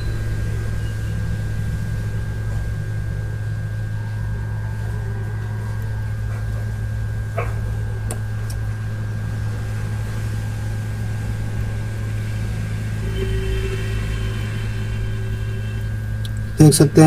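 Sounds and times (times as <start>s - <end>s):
faint steady whine: 0.0s - 17.0s
hot-air rework station blowing: 0.0s - 17.0s
low electrical hum: 0.0s - 17.0s.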